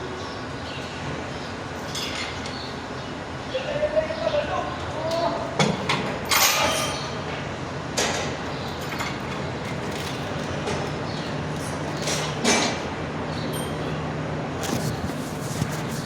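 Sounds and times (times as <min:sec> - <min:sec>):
metal tools clinking: 0:06.3 - 0:07.1.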